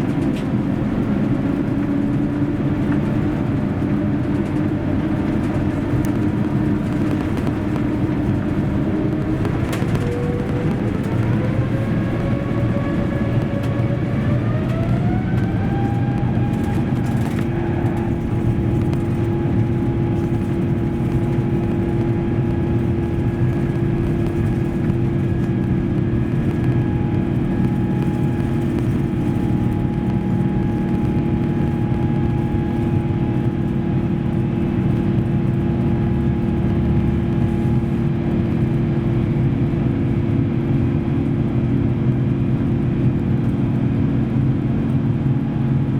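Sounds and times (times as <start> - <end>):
jet engines spooling up: 0.0 - 35.2
low engine rumble: 0.0 - 45.9.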